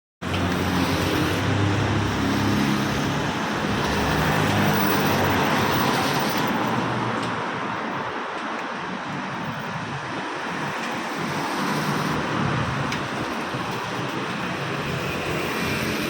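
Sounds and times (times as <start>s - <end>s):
rain and wet road hiss: 7.8s - 16.0s.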